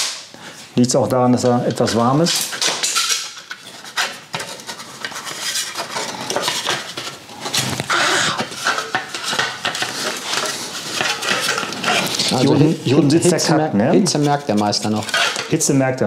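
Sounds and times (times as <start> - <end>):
metal parts clinking and scraping: 2.2 - 3.9.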